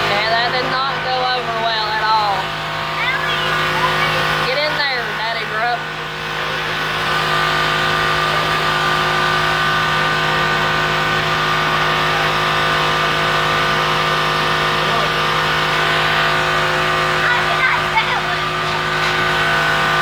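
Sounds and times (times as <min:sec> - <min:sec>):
blower fan rushing wind: 0:00.0 - 0:20.0.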